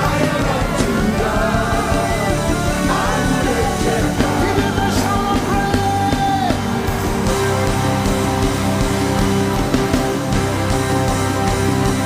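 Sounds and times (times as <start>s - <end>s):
voices singing: 0.0s - 8.4s
band with drums and bass: 0.0s - 12.0s.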